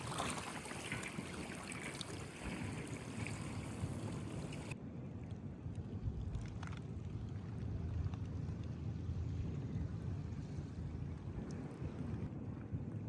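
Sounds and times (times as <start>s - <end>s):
water rushing on shore: 0.0s - 4.8s
wind: 0.0s - 13.0s.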